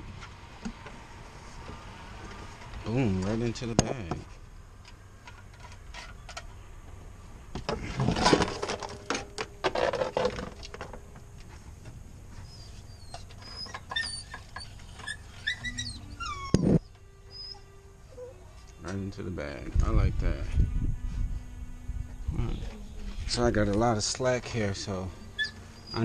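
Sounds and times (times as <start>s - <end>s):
high chirp-like squeaks: 12.4s - 19.0s, 25.1s - 26.0s.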